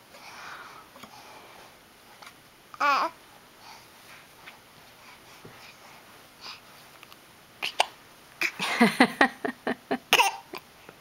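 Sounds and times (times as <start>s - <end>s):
baby hiccuping: 10.1s - 10.6s.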